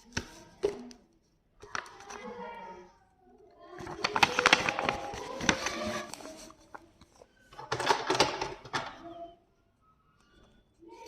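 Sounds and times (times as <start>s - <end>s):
packaging crinkling and rustling: 3.8s - 7.2s.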